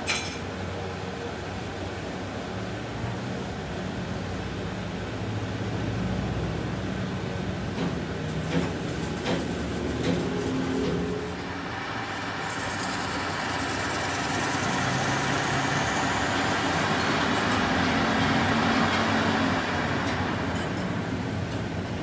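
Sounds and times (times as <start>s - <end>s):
machine running: 8.3s - 22.0s.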